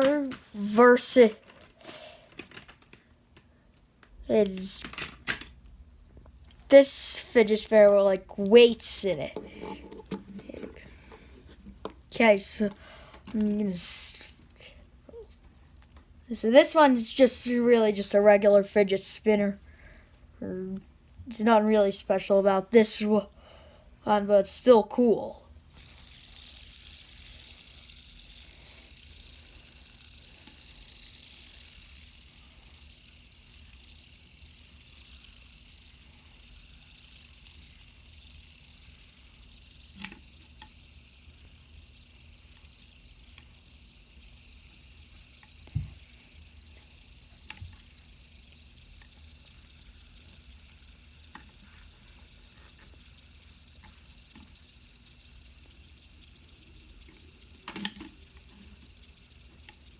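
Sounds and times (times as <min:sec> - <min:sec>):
fidget spinners whirring: 0:00.0 - 0:59.9.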